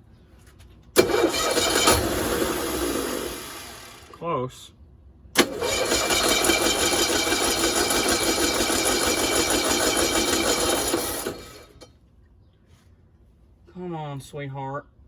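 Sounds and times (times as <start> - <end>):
engine turning over: 1.0 - 4.2, 5.4 - 11.9.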